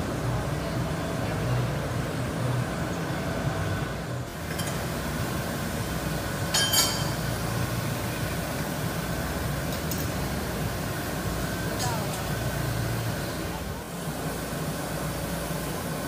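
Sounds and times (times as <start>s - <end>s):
hum of hardening equipment: 0.0s - 13.9s
metallic clink: 6.5s - 7.3s.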